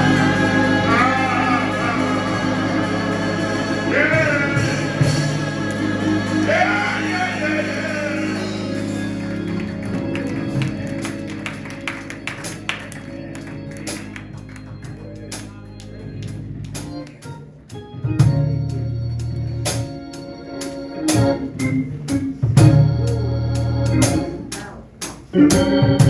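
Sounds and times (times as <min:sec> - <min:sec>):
person singing: 0:00.0 - 0:08.8
drum or cymbal taps: 0:00.0 - 0:09.8
organ chords: 0:00.0 - 0:26.0.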